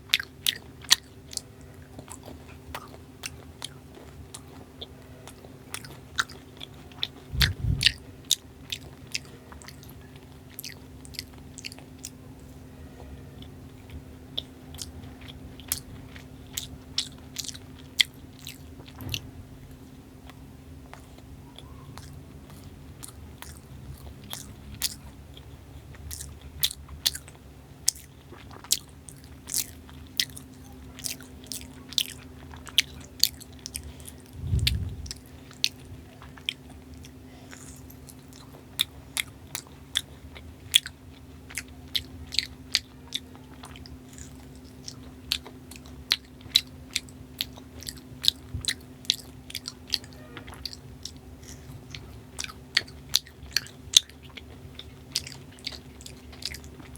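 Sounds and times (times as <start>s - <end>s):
chewing and biting: 0.0s - 56.9s
sharp mouth clicks: 7.3s - 8.0s.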